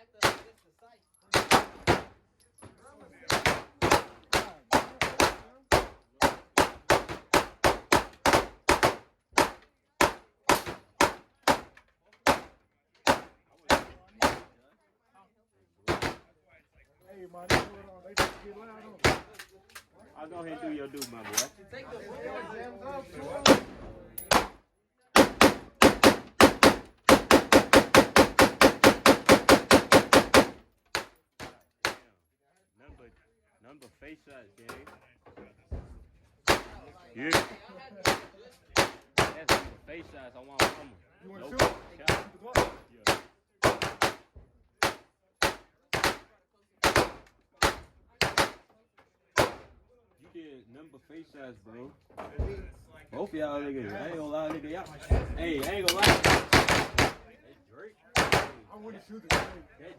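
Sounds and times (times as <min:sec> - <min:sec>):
rapid gunshots: 0:00.2 - 0:00.5, 0:01.3 - 0:02.2, 0:03.3 - 0:11.7, 0:13.1 - 0:14.5, 0:23.4 - 0:24.6, 0:25.2 - 0:31.1, 0:36.5 - 0:39.8, 0:40.6 - 0:40.9, 0:41.5 - 0:48.6, 0:49.4 - 0:49.7, 0:55.9 - 0:57.3, 0:58.2 - 0:58.6, 0:59.3 - 0:59.6.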